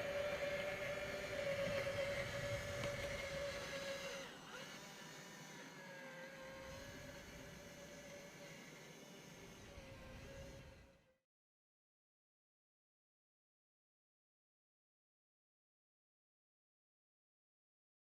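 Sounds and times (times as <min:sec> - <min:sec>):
hydraulic pump whining: 0:00.0 - 0:11.0.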